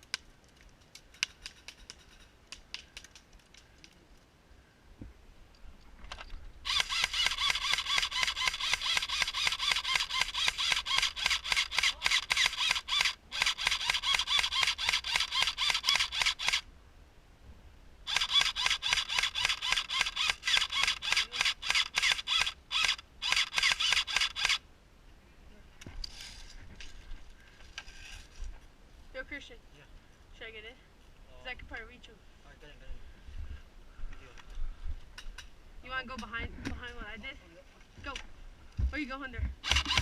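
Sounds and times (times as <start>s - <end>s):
airsoft rifle full-auto bursts: 6.6s - 16.6s, 18.1s - 24.6s, 39.6s - 40.0s.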